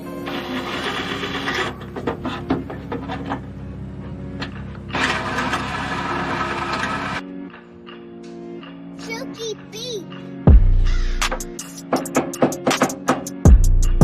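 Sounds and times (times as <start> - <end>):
reciprocating saw cutting metal: 0.0 - 3.5, 4.9 - 7.2.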